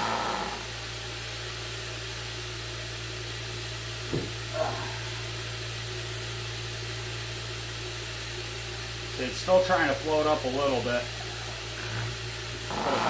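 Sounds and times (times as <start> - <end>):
vibrating table humming: 0.0 - 13.0
short knock: 4.1 - 4.4.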